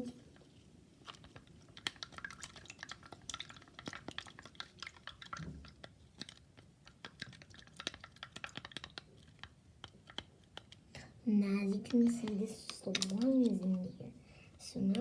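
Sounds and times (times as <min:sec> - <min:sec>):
slime squelching: 0:00.0 - 0:15.0
utensil clicking on container: 0:01.1 - 0:10.8, 0:11.7 - 0:13.8.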